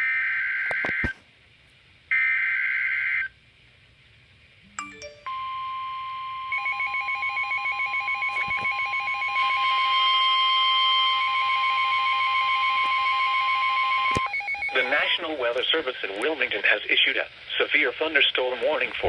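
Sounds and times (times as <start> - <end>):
steady warning tone: 4.7 - 19.0
fast-pulsing alarm beep: 5.3 - 15.2.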